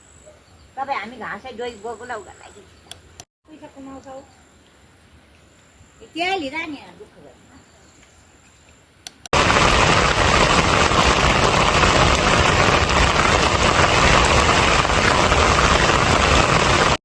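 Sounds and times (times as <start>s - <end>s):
heavy rain pouring: 9.4s - 17.0s.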